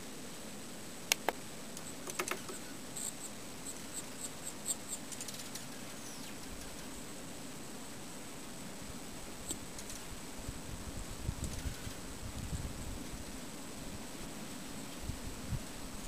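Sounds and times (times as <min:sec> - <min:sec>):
small birds calling: 0:01.8 - 0:07.0.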